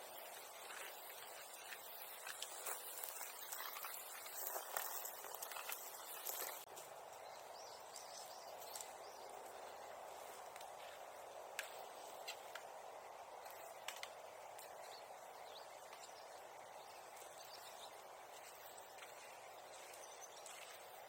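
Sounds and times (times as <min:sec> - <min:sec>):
fire hissing: 0:00.0 - 0:06.7
bonfire crackling and popping: 0:00.3 - 0:06.8, 0:13.4 - 0:14.8.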